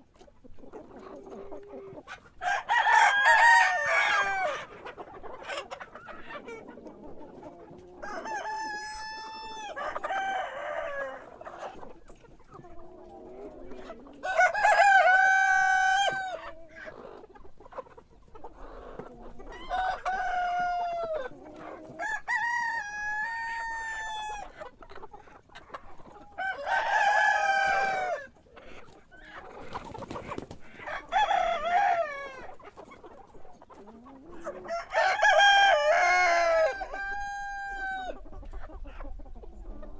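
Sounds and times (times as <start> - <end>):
chicken clucking: 0.0 - 39.9
rooster crowing: 2.4 - 4.6, 14.2 - 16.4, 34.7 - 38.1.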